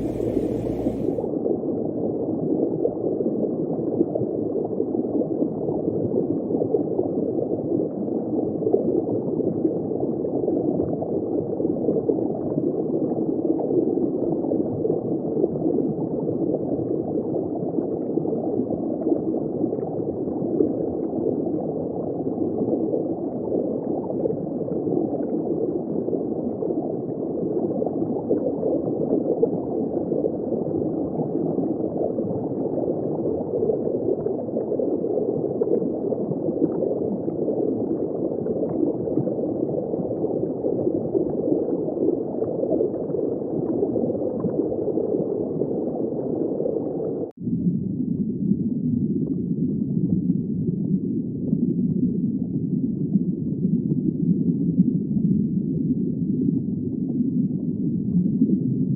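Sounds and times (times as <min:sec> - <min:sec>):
underwater bubbling and gurgling: 0:00.0 - 0:01.2, 0:03.4 - 0:47.3.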